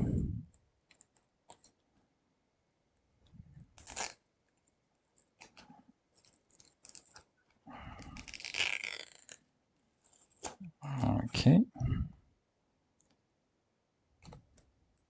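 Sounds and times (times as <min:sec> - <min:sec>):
crinkly rustle: 0:03.6 - 0:07.6.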